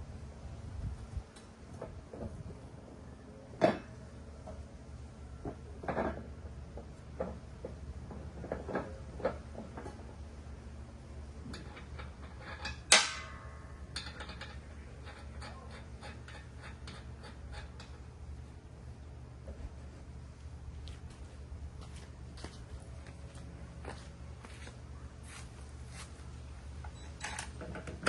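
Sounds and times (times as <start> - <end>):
loud metallic clank: 12.9 - 13.6.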